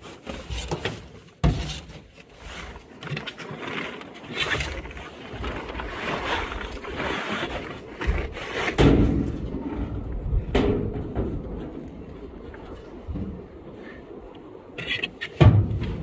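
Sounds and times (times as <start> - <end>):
scraping and rubbing with knocks: 0.0 - 13.9, 14.8 - 16.0
heavy thumps: 15.4 - 16.0.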